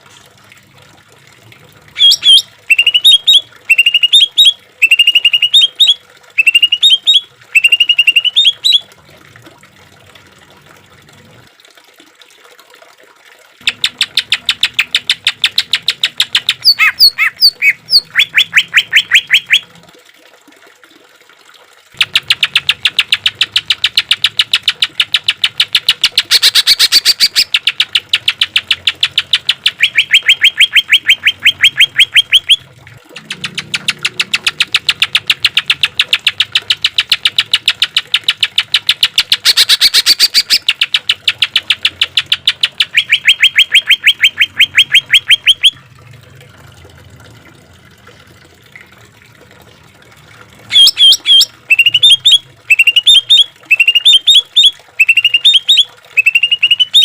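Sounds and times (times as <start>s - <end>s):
bird singing rapid rattling notes: 2.0s - 8.8s, 13.6s - 19.6s, 22.0s - 32.6s, 33.2s - 45.8s, 50.7s - 57.0s
sharp bird chirps: 55.0s - 57.0s.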